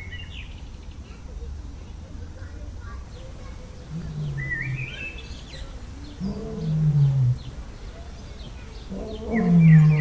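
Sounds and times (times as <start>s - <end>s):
small birds chirping: 0.0s - 1.3s, 1.9s - 10.0s
large animal low calls: 3.9s - 5.0s, 6.2s - 7.6s, 8.9s - 10.0s.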